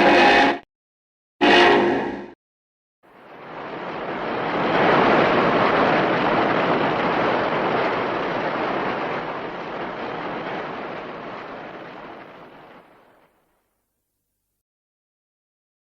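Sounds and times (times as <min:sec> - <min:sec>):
long rushing noise: 0:03.1 - 0:13.3.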